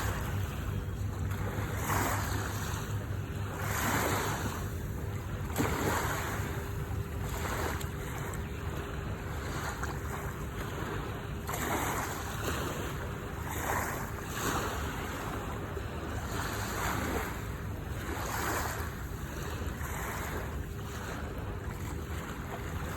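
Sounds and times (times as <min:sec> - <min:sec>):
low rumble: 0:00.0 - 0:11.6
sea waves washing ashore: 0:00.0 - 0:22.9.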